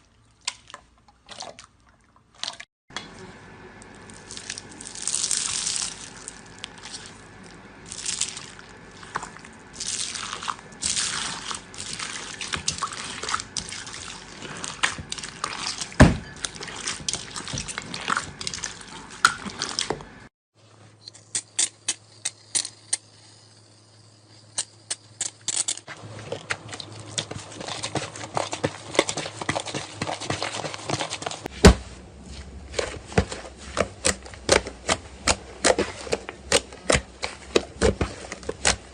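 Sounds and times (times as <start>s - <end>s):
slime squelching by hand: 3.9s - 20.2s, 25.9s - 38.9s.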